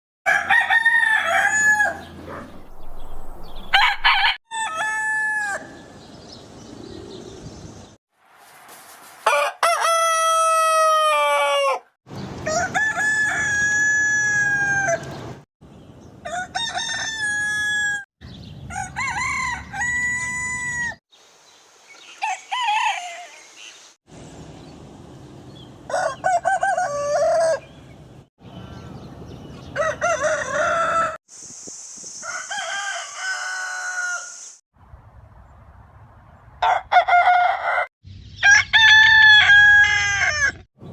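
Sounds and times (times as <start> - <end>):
roosters crowing: 0.3 - 2.8, 3.4 - 6.1, 9.2 - 15.4, 16.2 - 21.0, 22.1 - 23.5, 25.9 - 27.9, 29.6 - 31.2, 32.2 - 34.6, 36.6 - 40.7.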